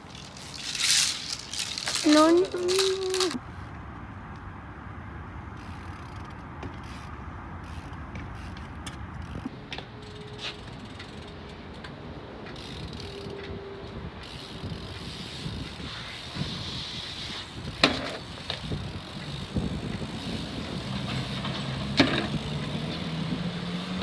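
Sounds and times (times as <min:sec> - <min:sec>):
bike freewheel hub ticking: 0:00.0 - 0:03.4, 0:05.6 - 0:13.5, 0:14.2 - 0:24.0.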